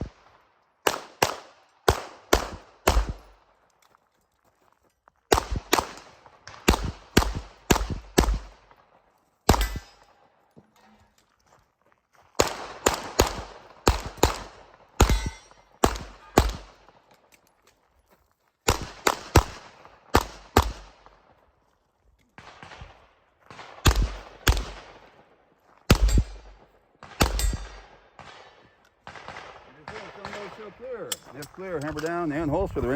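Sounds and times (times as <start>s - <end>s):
pistol shots: 0.0s - 3.6s, 5.3s - 8.9s, 9.5s - 10.2s, 12.4s - 17.0s, 18.7s - 21.2s, 22.4s - 25.2s, 25.9s - 32.0s.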